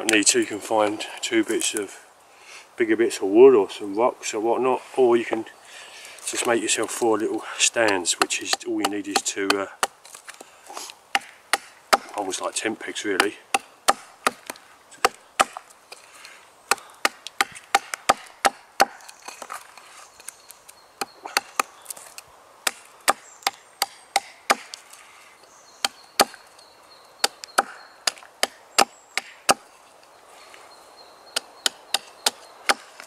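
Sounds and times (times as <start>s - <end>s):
chopping strikes into wood: 7.8s - 10.0s, 11.1s - 12.2s, 13.2s - 15.6s, 16.7s - 19.0s, 22.6s - 24.8s, 25.8s - 26.4s, 27.2s - 29.6s, 31.4s - 32.9s.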